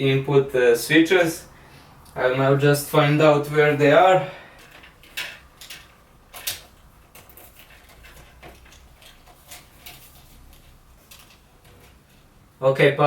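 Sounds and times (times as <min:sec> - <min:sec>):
cables rustling and clicking: 0:04.5 - 0:12.5.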